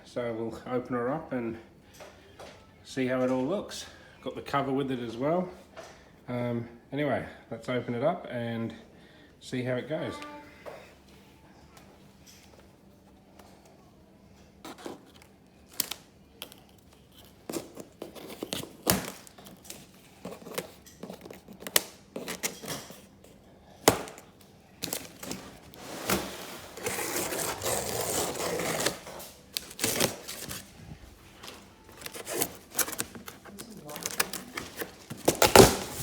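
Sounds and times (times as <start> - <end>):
cardboard tearing and scraping: 24.8 - 31.0, 31.8 - 36.0
cardboard flaps clicking and knocking: 31.9 - 36.0.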